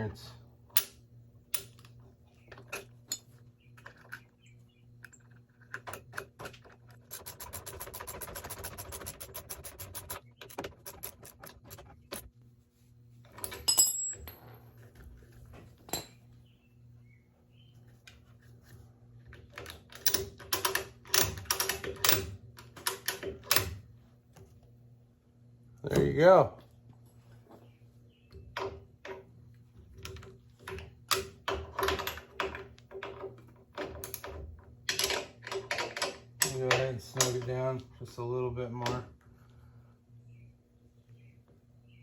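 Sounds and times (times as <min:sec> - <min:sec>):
rapid ratchet clicks: 0:07.0 - 0:12.2
metal clicks and knocks: 0:30.0 - 0:37.6.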